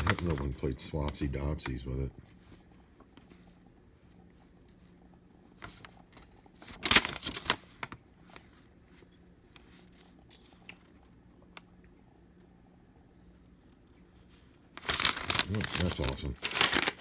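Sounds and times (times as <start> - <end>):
plastic handling clicks and scrapes: 14.8 - 17.0.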